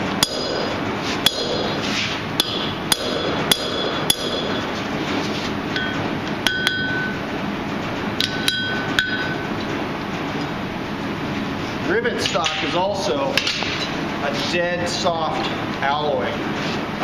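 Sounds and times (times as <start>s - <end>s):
hammer striking steel on anvil: 0.0s - 4.9s, 5.7s - 7.2s, 8.2s - 9.5s
steady background noise: 0.0s - 17.0s.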